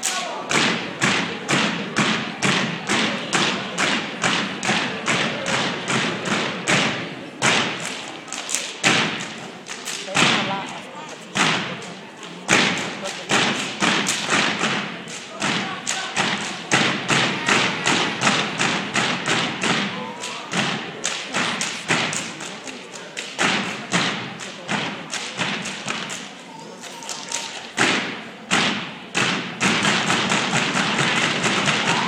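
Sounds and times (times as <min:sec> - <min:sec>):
stomping and clapping in unison: 0:00.0 - 0:32.0
crowd cheering: 0:12.2 - 0:23.4, 0:30.0 - 0:32.0.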